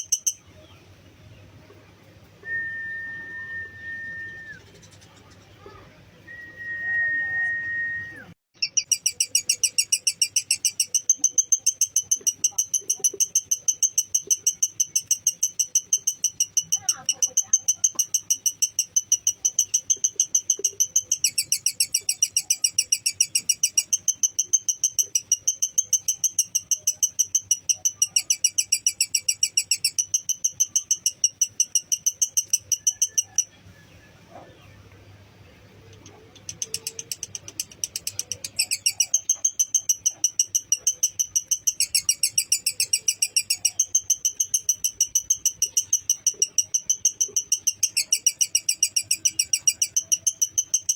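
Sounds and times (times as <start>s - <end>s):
lovebird shrill chirping: 0.0s - 0.7s, 8.2s - 33.6s, 35.8s - 50.9s.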